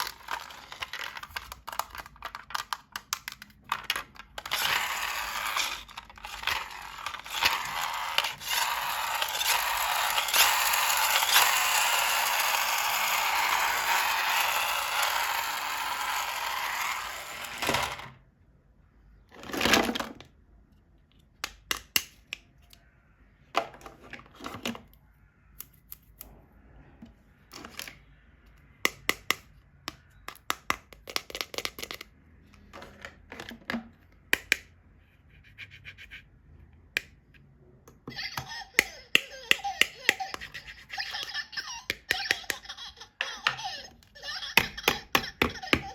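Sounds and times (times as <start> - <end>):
plastic toy pieces clicking: 0.0 - 18.2, 28.9 - 32.1, 38.0 - 45.9.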